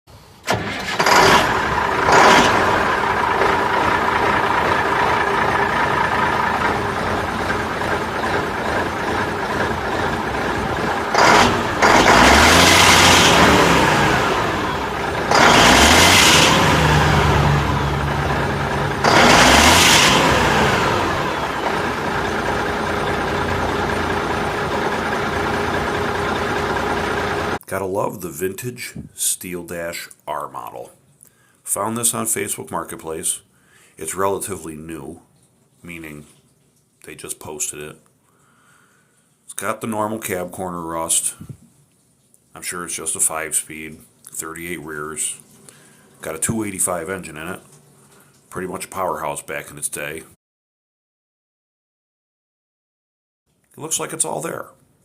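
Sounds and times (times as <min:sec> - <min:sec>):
diesel truck engine starting and idling: 0:00.1 - 0:27.6
truck engine revving: 0:00.5 - 0:27.6.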